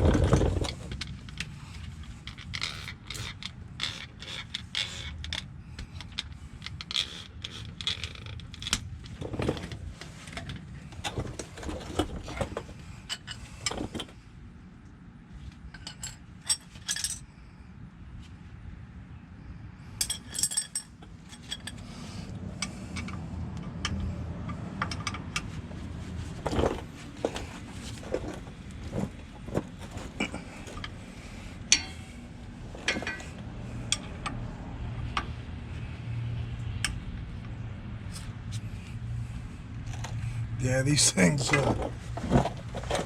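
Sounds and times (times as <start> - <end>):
hand tools clinking on steel: 31.6 - 32.1, 32.8 - 34.1.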